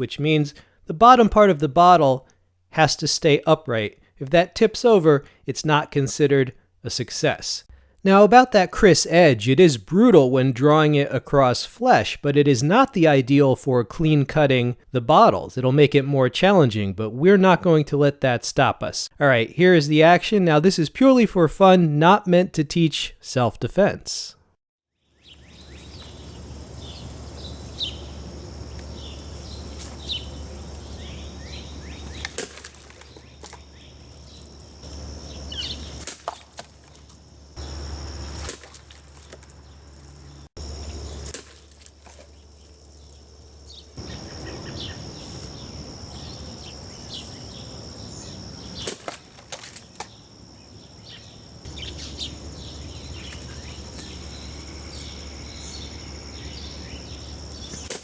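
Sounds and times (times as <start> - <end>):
birds chirping: 25.1 - 41.3, 42.2 - 49.2, 49.8 - 58.0
knife chopping through bottles: 36.0 - 37.1.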